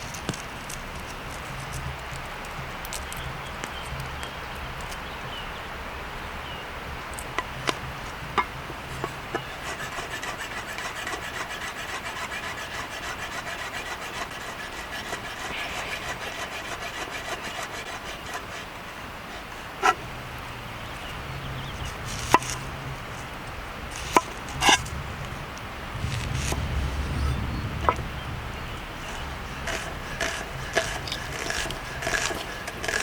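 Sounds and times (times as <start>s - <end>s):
rhythmic scraping on wood: 7.2s - 33.0s.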